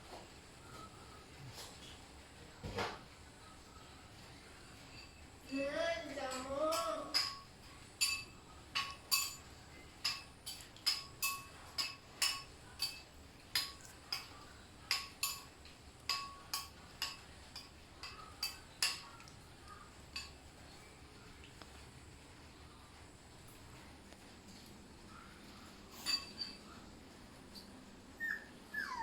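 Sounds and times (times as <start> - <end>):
light metallic clinks: 6.3 - 21.0, 24.5 - 27.8.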